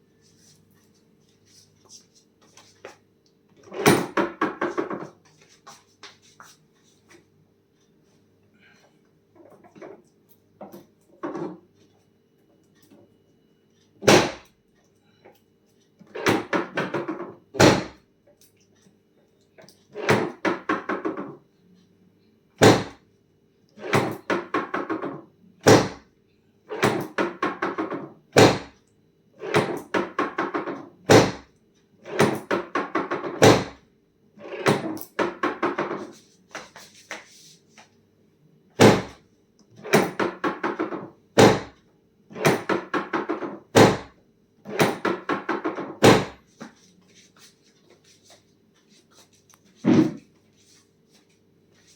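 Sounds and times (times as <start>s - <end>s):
sharp mechanical knocks: 14.0s - 14.5s, 16.2s - 18.0s, 22.6s - 23.0s, 23.8s - 26.0s, 26.8s - 28.8s, 29.5s - 31.5s, 38.8s - 39.2s, 39.8s - 44.1s, 44.7s - 46.4s.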